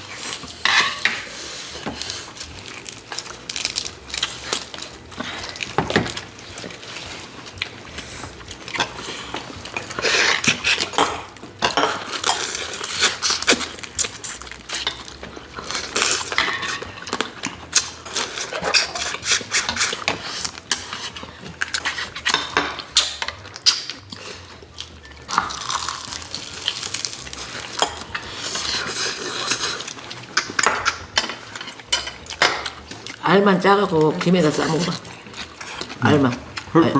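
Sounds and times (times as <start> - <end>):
people chewing: 0.0 - 36.9
cutlery clinking on dishes: 0.2 - 7.0, 8.2 - 24.3, 26.5 - 33.1.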